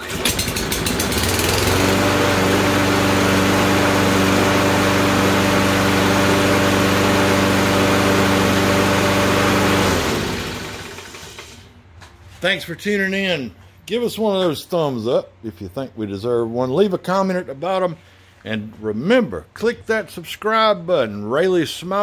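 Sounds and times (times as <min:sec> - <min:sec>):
lawn mower engine running: 0:00.0 - 0:11.7.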